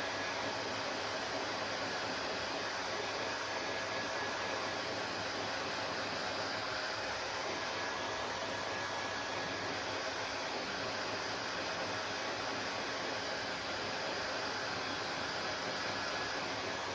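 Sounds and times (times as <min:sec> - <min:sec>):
hair dryer running: 0:00.0 - 0:16.9.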